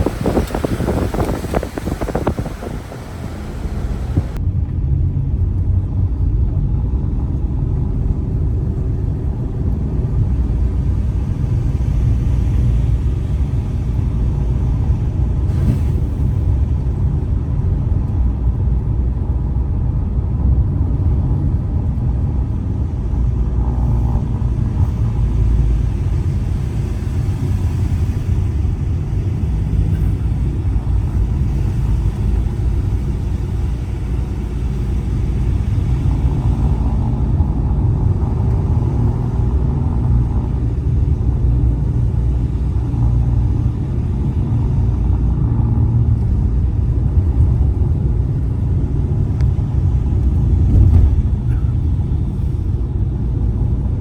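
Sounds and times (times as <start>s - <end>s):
bright rushing noise: 0.0s - 4.4s
car engine and road rumble: 0.0s - 54.0s.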